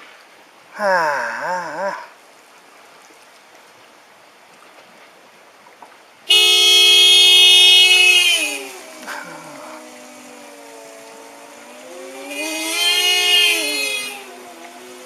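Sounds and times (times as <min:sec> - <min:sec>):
car horn blaring: 0:06.3 - 0:10.6, 0:11.7 - 0:15.0.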